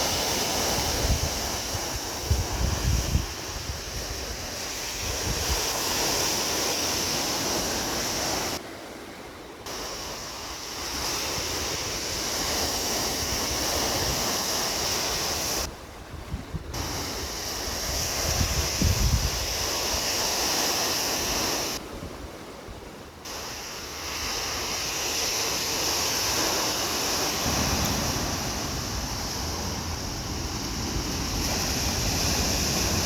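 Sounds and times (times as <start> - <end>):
wind buffeting microphone: 0.0 - 6.1, 11.4 - 19.8, 27.2 - 33.0
sea waves rushing: 0.0 - 33.0.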